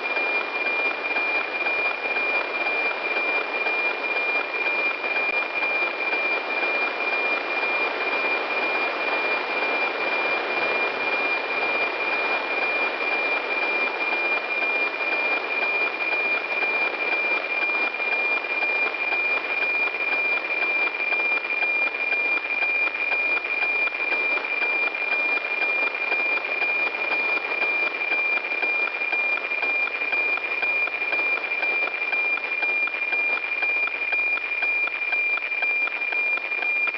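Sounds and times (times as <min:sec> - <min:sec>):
steady radio tone: 0:00.0 - 0:36.9
regular ticking pulse: 0:13.2 - 0:36.9.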